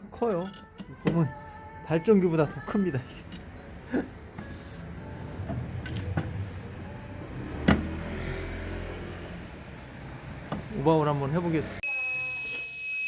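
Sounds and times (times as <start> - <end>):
tools clicking and knocking: 0.0 - 1.4.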